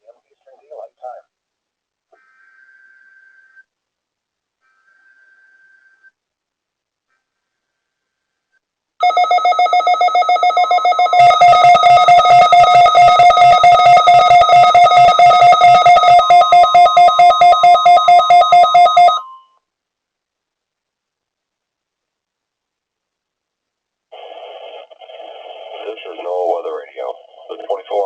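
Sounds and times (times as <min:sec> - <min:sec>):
pulsing electronic alert tone: 0:10.4 - 0:19.2.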